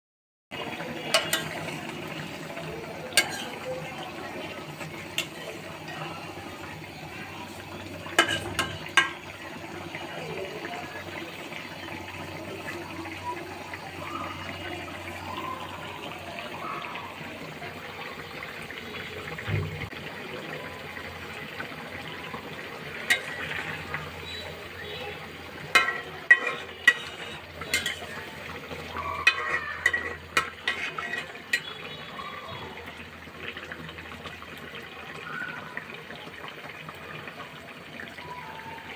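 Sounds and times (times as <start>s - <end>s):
utensils and dishes clicking: 1.1s - 4.1s, 4.8s - 6.7s, 7.4s - 9.3s, 23.0s - 24.1s, 25.6s - 31.8s
dishes clinking: 1.1s - 9.4s, 23.0s - 24.4s, 25.6s - 31.9s.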